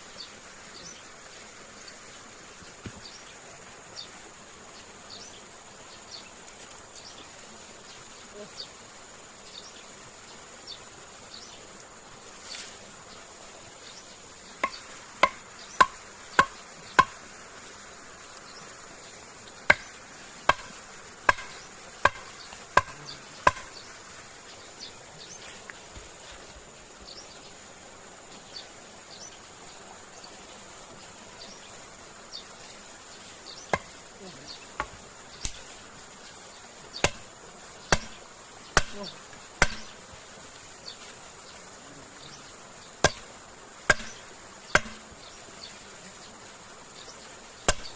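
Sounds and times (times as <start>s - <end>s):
hand tool chopping: 14.6s - 17.3s, 19.6s - 23.8s, 33.7s - 34.0s, 34.8s - 35.8s, 37.0s - 37.3s, 37.9s - 40.0s, 43.0s - 45.2s, 47.6s - 47.9s.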